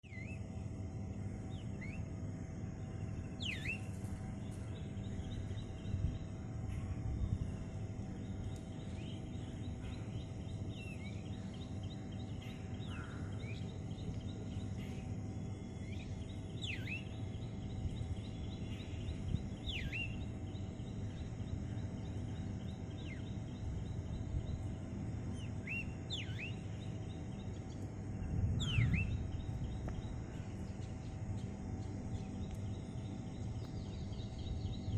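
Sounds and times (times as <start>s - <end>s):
birds chirping: 0.0s - 34.9s
low background rumble: 0.0s - 34.9s
sharp downward-sweeping bird calls: 19.6s - 20.2s.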